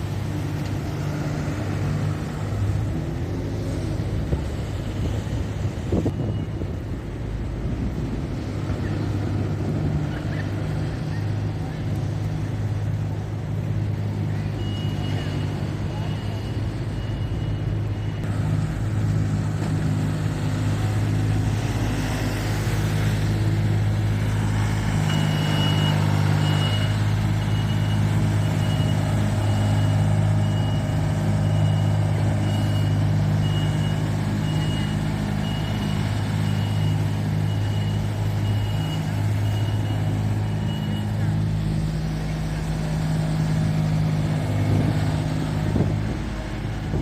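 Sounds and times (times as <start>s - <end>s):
truck engine running: 0.0s - 47.0s
reversing alarm beeping: 6.0s - 6.9s, 14.5s - 18.3s, 24.9s - 41.4s.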